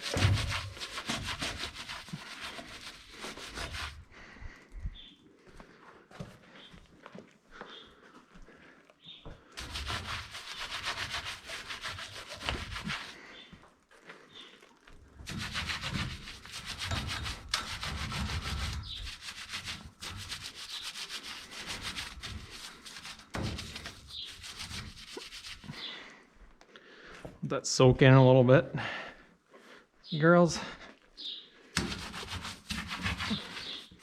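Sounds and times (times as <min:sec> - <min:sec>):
wet rag scrubbing a pipe: 0:00.0 - 0:04.3, 0:09.4 - 0:25.9, 0:31.8 - 0:34.0.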